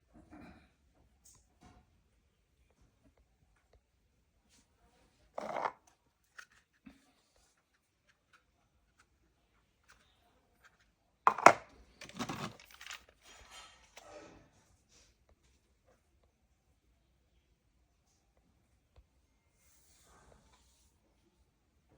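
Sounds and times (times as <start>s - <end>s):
packaging rustling and crinkling: 11.9s - 13.7s.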